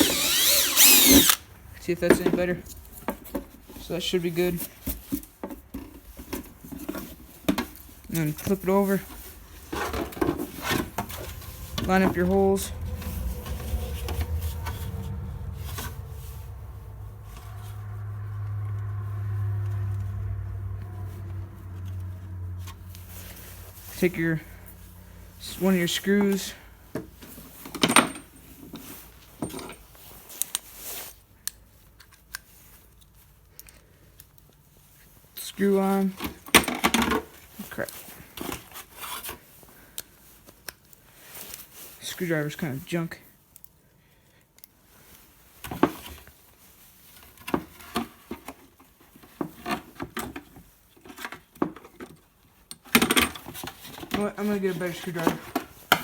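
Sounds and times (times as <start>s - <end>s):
screwdriver driving screw into wood: 0.0s - 1.4s
rustle and clatter: 2.1s - 24.0s.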